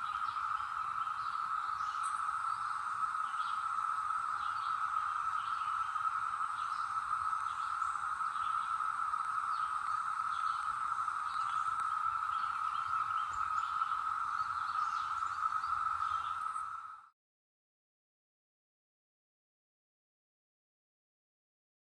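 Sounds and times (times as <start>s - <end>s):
cicadas droning: 0.0s - 17.1s.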